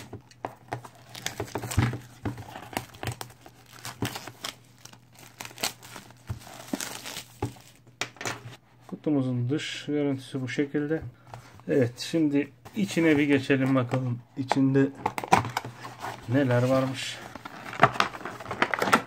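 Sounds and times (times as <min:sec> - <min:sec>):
packaging crinkling and tearing: 0:00.7 - 0:07.8, 0:17.4 - 0:19.0.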